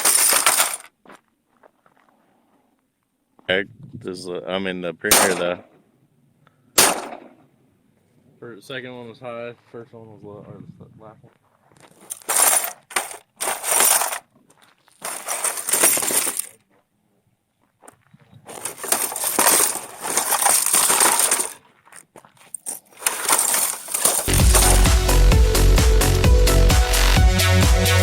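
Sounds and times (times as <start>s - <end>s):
crunching clattering noise: 0.0s - 1.0s, 5.1s - 5.7s, 11.6s - 16.8s, 17.8s - 25.0s
electronic dance music: 24.2s - 28.0s.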